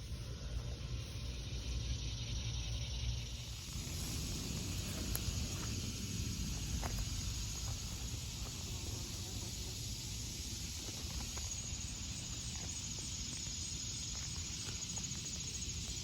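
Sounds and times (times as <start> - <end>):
high steady whine: 0.0 - 16.0
air conditioner fan rushing: 3.3 - 12.3.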